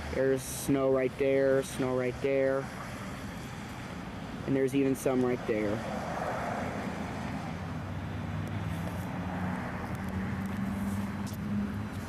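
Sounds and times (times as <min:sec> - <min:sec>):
low engine hum: 0:00.0 - 0:12.0
car tyres hissing on wet road: 0:05.8 - 0:07.6.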